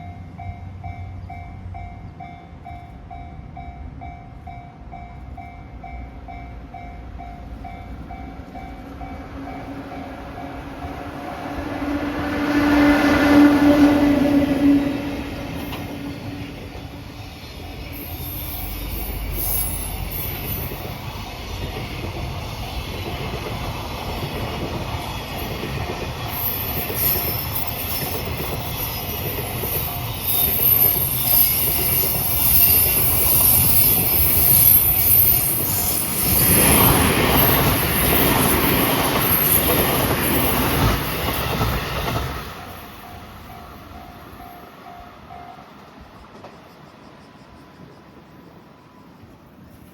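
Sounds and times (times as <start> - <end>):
level crossing warning bell: 0.0 - 10.9, 17.6 - 21.8, 24.8 - 45.9
high-pitched wheel squeal: 17.6 - 21.6, 26.2 - 42.1.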